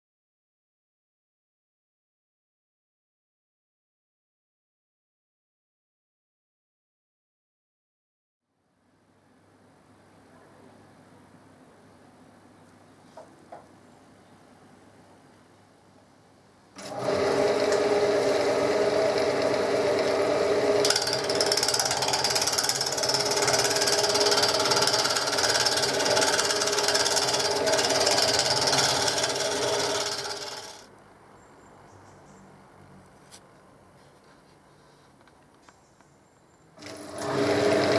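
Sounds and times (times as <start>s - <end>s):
woodworking power tool running: 16.8s - 30.9s, 36.8s - 37.9s.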